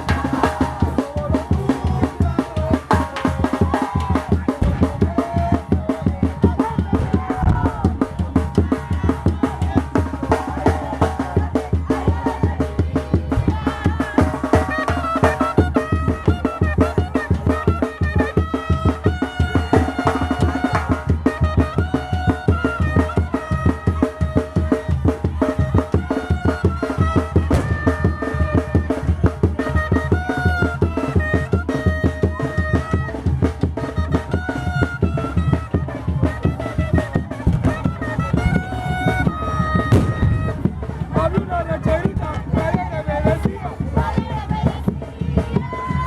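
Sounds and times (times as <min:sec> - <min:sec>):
steady driving drumbeats: 0:00.0 - 0:46.0
high wind instrument melody: 0:13.9 - 0:24.9, 0:25.8 - 0:41.7.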